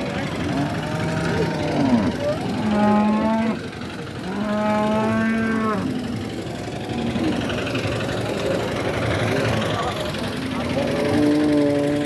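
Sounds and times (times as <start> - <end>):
steady background noise: 0.0 - 12.0
cow mooing: 0.4 - 6.2, 10.9 - 12.0.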